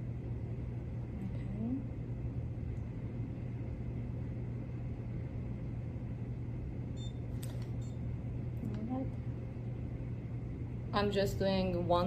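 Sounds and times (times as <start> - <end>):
steady low hum: 0.0 - 12.0
curing light beep: 7.0 - 8.0.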